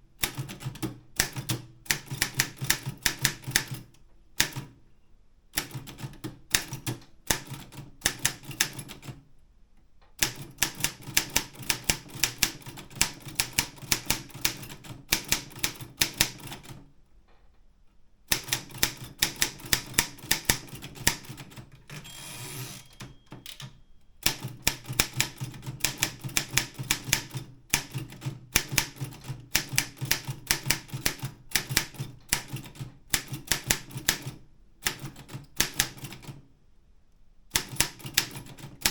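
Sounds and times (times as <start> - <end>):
typewriter carriage sliding: 21.7 - 23.7.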